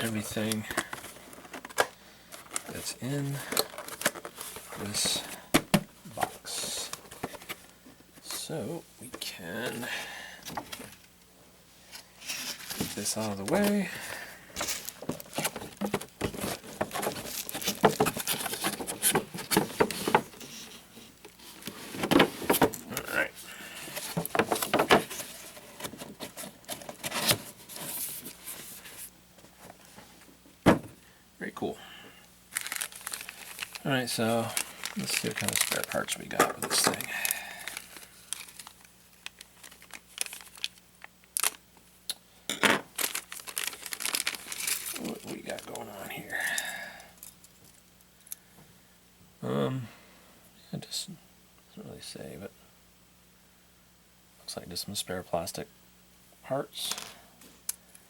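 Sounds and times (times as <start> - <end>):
packaging rustling and crinkling: 0.0 - 5.4, 12.2 - 29.9, 32.5 - 41.6, 42.9 - 46.3.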